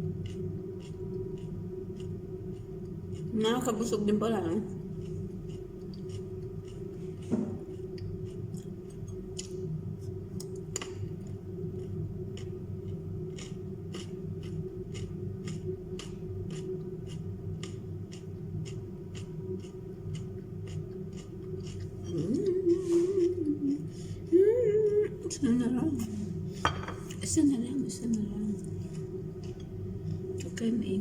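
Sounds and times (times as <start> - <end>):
crunchy chewing of raw vegetables: 0.0 - 3.4, 4.7 - 23.8
low background hum: 0.0 - 31.0.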